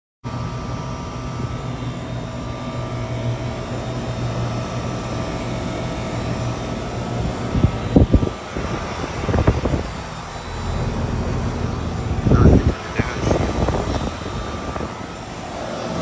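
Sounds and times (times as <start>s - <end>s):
compressor hum: 0.3s - 16.0s
condenser fan rushing: 0.3s - 16.0s.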